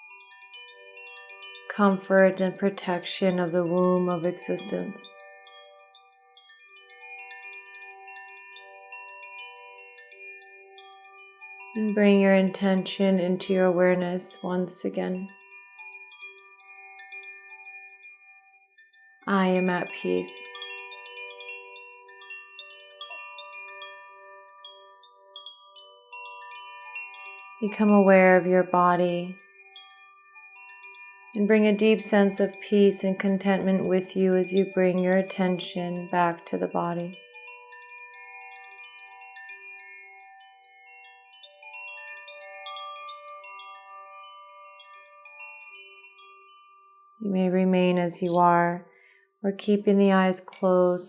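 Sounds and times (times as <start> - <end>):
soft chimes ringing: 0.0 - 49.1.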